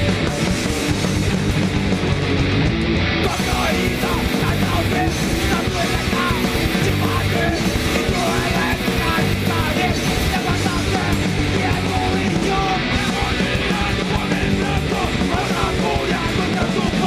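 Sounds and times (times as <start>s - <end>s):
bass guitar: 0.0s - 17.0s
distorted electric guitar: 0.0s - 17.0s
drums: 0.0s - 17.0s.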